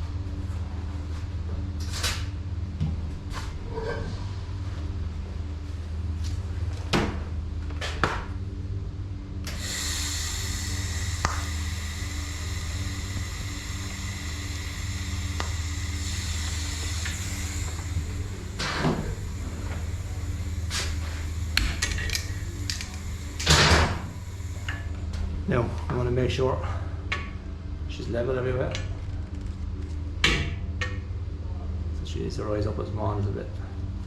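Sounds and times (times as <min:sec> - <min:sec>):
electrical hum: 0:00.0 - 0:34.0
steady hiss: 0:09.5 - 0:25.7.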